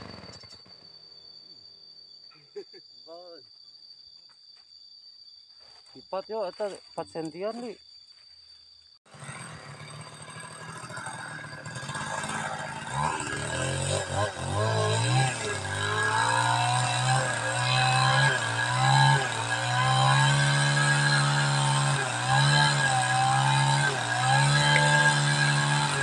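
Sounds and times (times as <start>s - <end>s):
chainsaw cutting wood: 0.0s - 0.8s, 9.1s - 26.0s.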